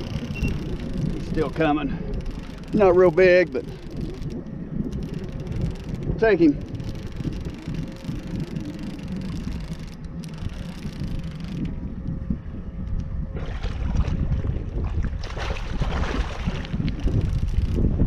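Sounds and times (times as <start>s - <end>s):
wind buffeting microphone: 0.0s - 18.0s
water splashing and sloshing: 13.3s - 18.0s.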